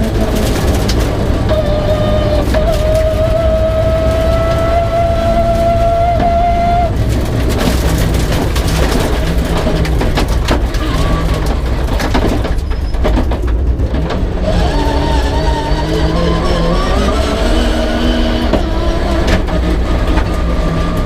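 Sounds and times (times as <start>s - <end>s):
clatter of knocks and rattles: 0.0s - 4.8s, 5.4s - 21.0s
rally car engine revving: 0.0s - 21.0s.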